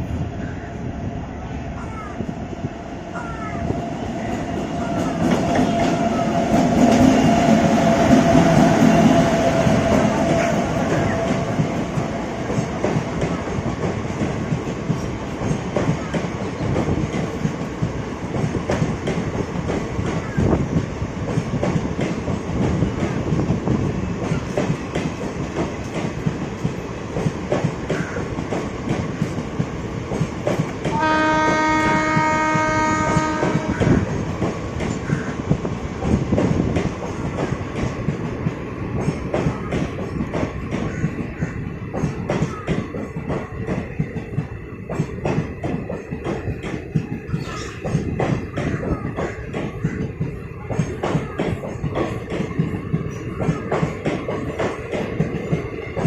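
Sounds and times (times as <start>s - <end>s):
train rumbling at speed: 0.0s - 56.0s
locomotive horn: 30.9s - 34.0s.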